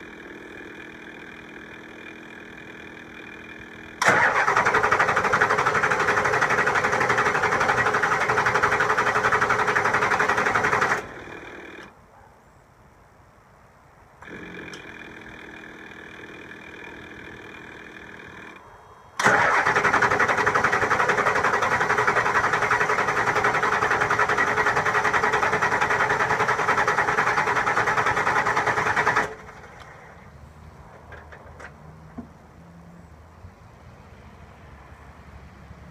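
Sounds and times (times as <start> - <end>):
diesel engine cranking: 0.0 - 12.0, 14.2 - 32.4
quiet steady hum: 11.0 - 19.2.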